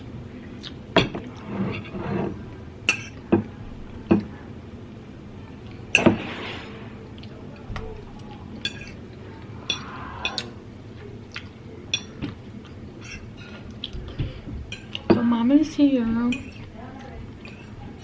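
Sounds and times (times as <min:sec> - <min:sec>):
cutlery clinking against a plate: 0:01.0 - 0:03.5, 0:05.9 - 0:07.3, 0:08.6 - 0:10.5, 0:11.9 - 0:12.4, 0:13.0 - 0:14.0, 0:14.7 - 0:15.3, 0:16.3 - 0:16.7, 0:17.4 - 0:17.8.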